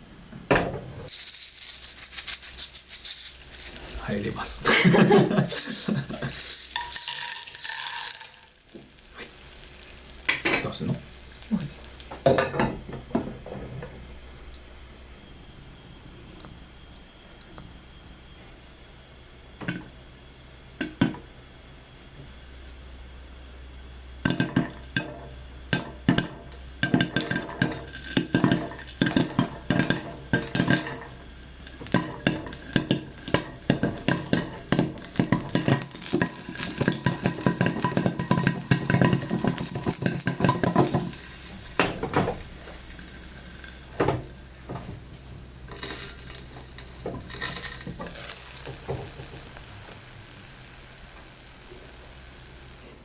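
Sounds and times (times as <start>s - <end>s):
popcorn popping: 0.5s - 14.0s, 20.8s - 21.3s, 23.8s - 53.0s.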